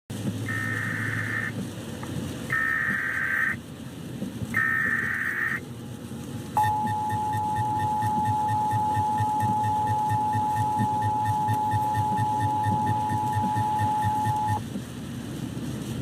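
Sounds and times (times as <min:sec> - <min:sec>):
data burst tones: 0:00.5 - 0:01.5, 0:02.5 - 0:03.6, 0:04.6 - 0:05.6, 0:06.6 - 0:14.6
two-tone attention signal: 0:00.5 - 0:01.5, 0:02.5 - 0:03.6, 0:06.6 - 0:14.6.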